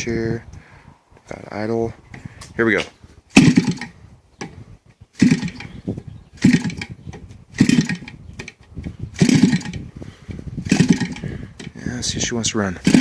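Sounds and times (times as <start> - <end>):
small engine starting: 3.3 - 3.9, 5.2 - 5.8, 6.4 - 9.9, 10.6 - 11.8, 12.8 - 13.0.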